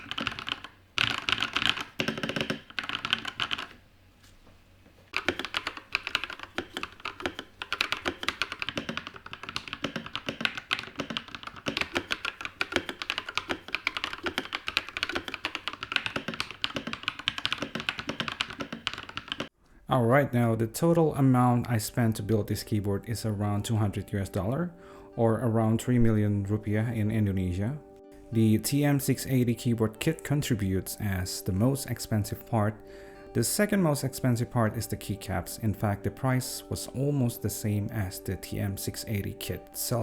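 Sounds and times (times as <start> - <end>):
mechanical keyboard typing: 0.0 - 3.8, 5.1 - 19.5.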